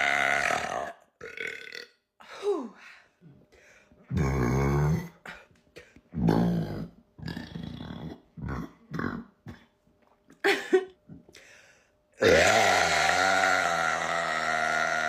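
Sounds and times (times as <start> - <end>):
woman burping loudly: 0.0 - 2.0, 12.2 - 15.0.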